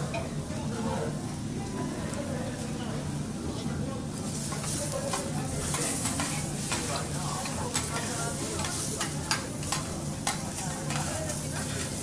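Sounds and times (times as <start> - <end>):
food sizzling on griddle: 4.2 - 12.0
metal spatulas clicking and scraping: 4.5 - 12.0.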